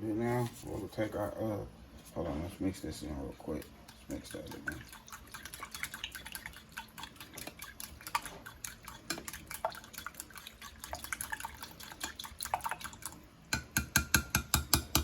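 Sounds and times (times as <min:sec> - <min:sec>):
utensil stirring dry flour: 0:00.2 - 0:15.0.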